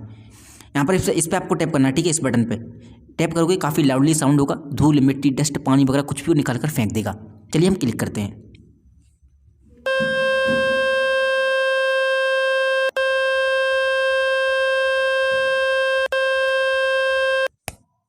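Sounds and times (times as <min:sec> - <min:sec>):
buzzy electronic tone: 0:09.8 - 0:17.5.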